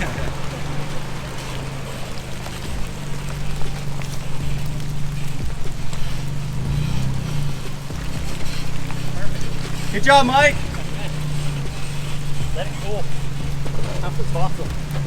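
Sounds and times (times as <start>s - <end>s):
vehicle engine under load: 0.0s - 15.0s.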